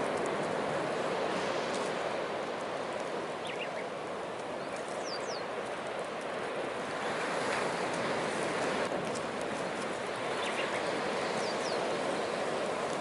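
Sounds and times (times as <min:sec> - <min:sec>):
bonfire burning: 0:00.0 - 0:13.0
fire crackles: 0:00.0 - 0:13.0
bird chirping: 0:03.4 - 0:03.8, 0:04.6 - 0:05.5, 0:10.4 - 0:11.8.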